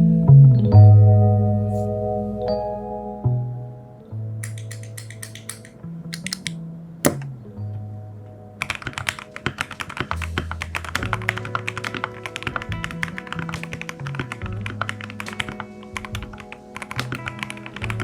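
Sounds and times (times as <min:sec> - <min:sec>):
background music with bass: 0:00.0 - 0:08.6, 0:10.0 - 0:18.0
mechanical keyboard typing: 0:04.4 - 0:07.2, 0:08.6 - 0:18.0.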